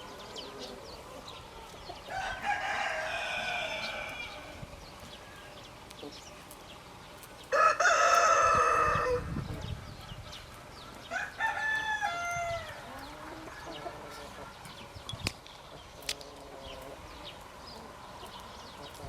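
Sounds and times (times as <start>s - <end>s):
rooster crowing: 2.1s - 4.6s, 7.5s - 9.3s, 11.0s - 14.6s.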